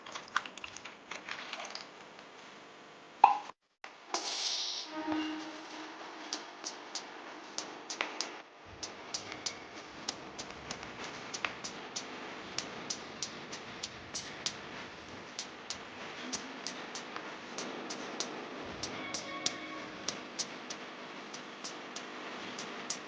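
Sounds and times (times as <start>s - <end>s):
food popping and crackling in pan: 0.0s - 2.4s
steady hiss: 4.0s - 23.0s.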